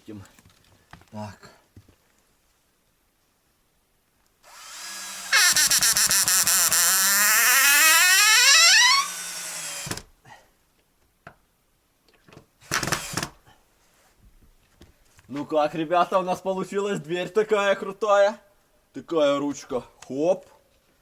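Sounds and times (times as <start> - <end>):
cordless drill driving screw: 4.5 - 10.1, 12.6 - 13.4.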